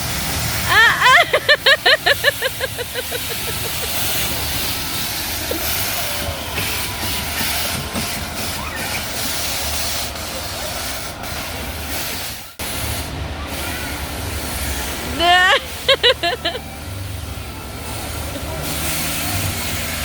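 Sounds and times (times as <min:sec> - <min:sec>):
rushing hiss: 0:00.0 - 0:20.0.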